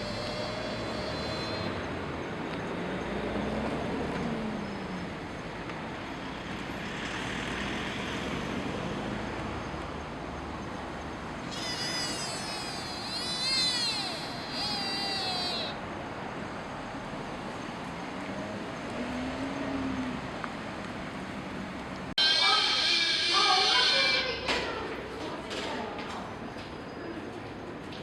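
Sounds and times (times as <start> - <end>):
deer high-pitched wavering calls: 0.0 - 1.8, 11.5 - 15.8, 22.2 - 24.5
road traffic rumble: 0.0 - 28.0.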